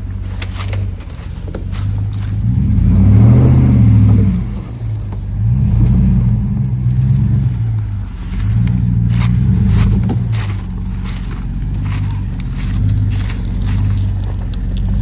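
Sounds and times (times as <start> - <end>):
vehicle engine revving: 0.0 - 15.0.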